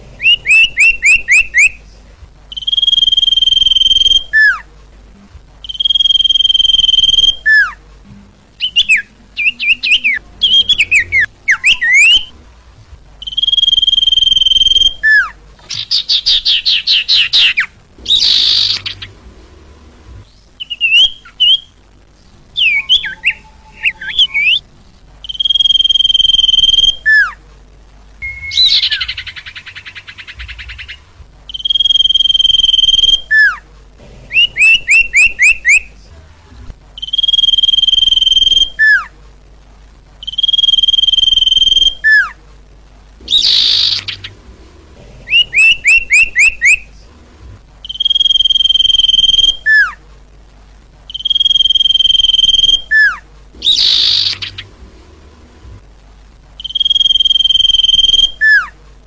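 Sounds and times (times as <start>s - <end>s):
bird singing loudly: 0.2s - 1.8s, 2.5s - 4.6s, 5.6s - 7.8s, 8.6s - 12.3s, 13.2s - 19.1s, 20.6s - 21.8s, 22.6s - 24.6s, 25.2s - 27.4s, 28.2s - 33.6s, 34.3s - 35.9s, 37.0s - 39.1s, 40.2s - 42.4s, 43.3s - 44.3s, 45.3s - 46.8s, 47.8s - 50.0s, 51.1s - 54.7s, 56.6s - 58.7s.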